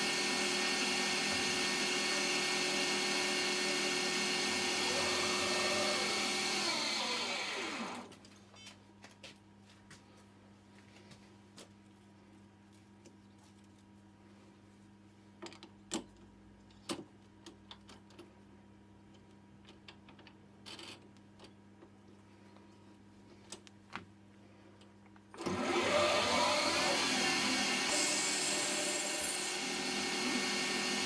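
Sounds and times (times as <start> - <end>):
loud machining noise: 0.0 - 8.0, 25.5 - 31.0
lathe humming: 0.0 - 8.1, 25.4 - 31.0.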